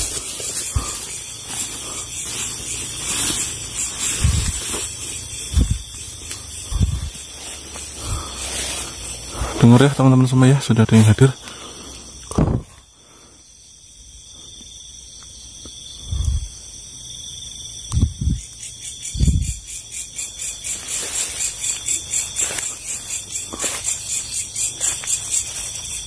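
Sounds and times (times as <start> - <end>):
crickets chirping: 0.0 - 26.0
short low thuds: 5.4 - 5.9, 6.7 - 7.2, 18.0 - 18.4.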